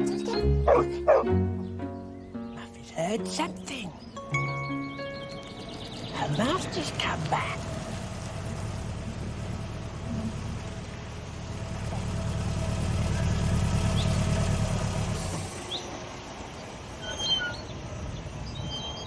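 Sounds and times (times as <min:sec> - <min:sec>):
bird chirps: 0:00.0 - 0:06.4, 0:16.6 - 0:19.0
vehicle engine running: 0:05.7 - 0:16.6.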